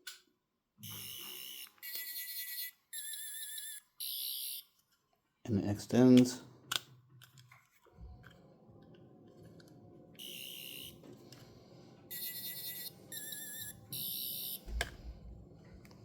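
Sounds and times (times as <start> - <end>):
high-pitched electronic buzzes: 12.1 - 14.7.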